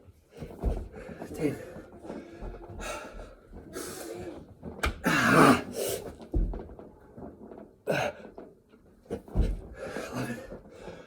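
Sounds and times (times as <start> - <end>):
hard breathing: 0.8 - 4.4
body thudding on floor: 9.2 - 9.8.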